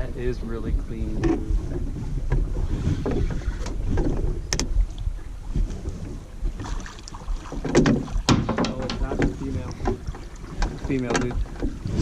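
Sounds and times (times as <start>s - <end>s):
wind buffeting microphone: 0.0s - 12.0s
knocks and clatter: 7.5s - 10.0s, 10.6s - 11.8s.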